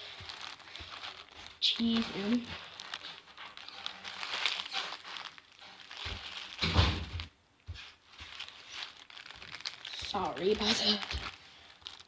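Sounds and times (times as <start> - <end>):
crinkling and handling: 0.0 - 12.0
loud thump: 6.6 - 7.2.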